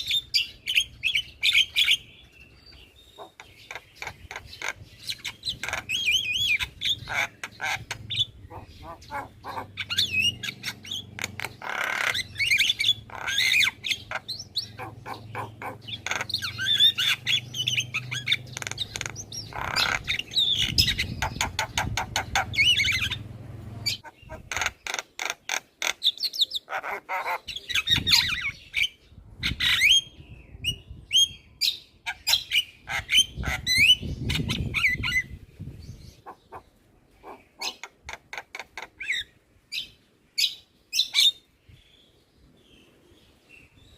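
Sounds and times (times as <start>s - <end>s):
myna chattering: 3.2s - 17.4s, 23.8s - 25.4s.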